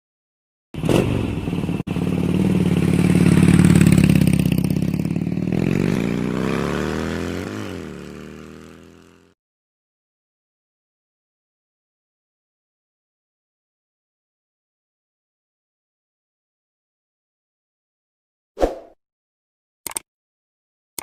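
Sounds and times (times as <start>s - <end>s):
vehicle engine revving: 0.8s - 9.3s.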